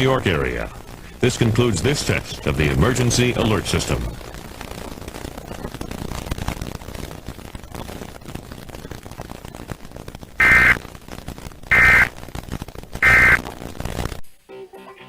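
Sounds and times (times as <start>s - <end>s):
broadcast static hiss: 0.0s - 15.0s
digital data code bursts: 10.4s - 10.8s, 11.7s - 12.1s, 13.0s - 13.4s.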